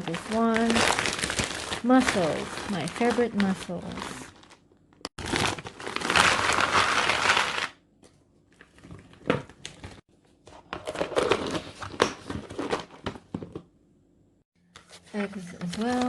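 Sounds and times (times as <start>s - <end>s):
plastic packaging crinkling: 0.0s - 7.8s.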